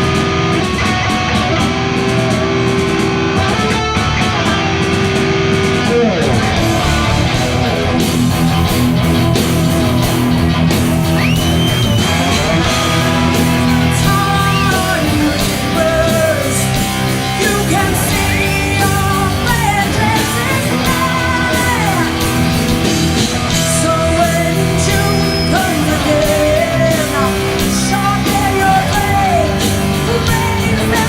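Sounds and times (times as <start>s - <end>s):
heavy metal band playing live: 0.0s - 31.0s
high sung vocal with vibrato: 13.4s - 22.6s, 23.6s - 31.0s.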